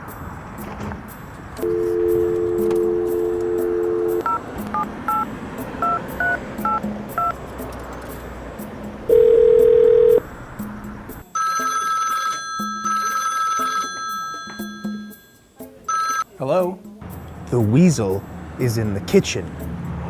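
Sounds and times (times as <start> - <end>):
quiet background music: 0.1 - 20.0
steady dial tone: 1.6 - 5.2, 9.1 - 10.2
telephone ringing: 1.6 - 5.2, 9.1 - 10.2, 11.4 - 15.3, 15.9 - 16.4
keypad dialling beeps: 1.6 - 7.3, 9.1 - 10.2.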